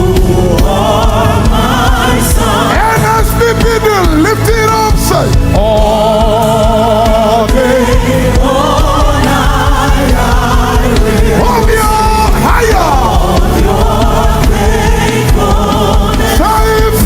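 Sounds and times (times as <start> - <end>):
live gospel band playing: 0.0 - 17.0
voices singing: 0.0 - 17.0.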